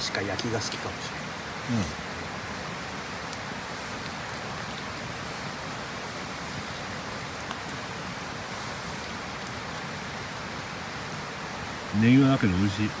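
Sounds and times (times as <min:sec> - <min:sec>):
wood fire hissing: 0:00.0 - 0:13.0
faint fire pops: 0:02.2 - 0:10.0.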